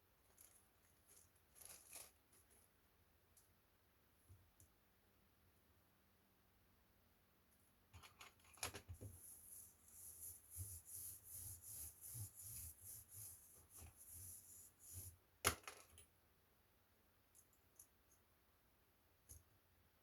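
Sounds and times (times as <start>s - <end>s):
plastic parts clicking and scraping: 0.3s - 2.6s.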